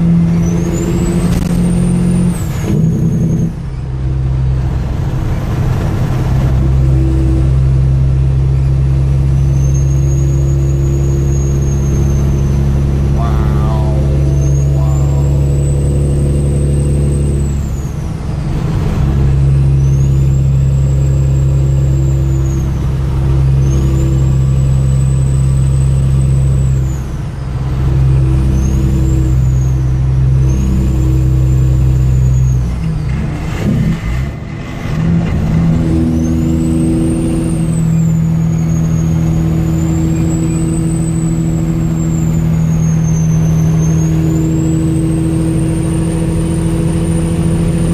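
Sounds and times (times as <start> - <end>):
diesel truck engine pulling: 0.0 - 47.9.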